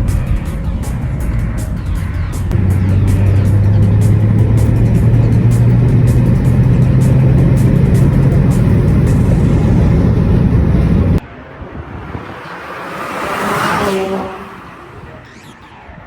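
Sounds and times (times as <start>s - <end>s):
car engine running: 0.3s - 11.2s.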